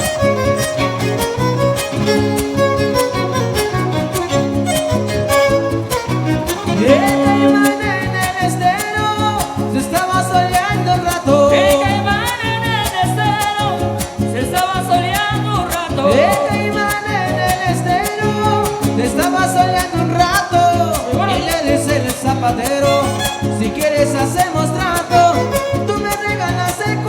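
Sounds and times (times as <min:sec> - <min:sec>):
violin melody with sliding notes: 0:00.0 - 0:09.0, 0:22.7 - 0:26.7
guitars strumming quickly: 0:00.0 - 0:27.0.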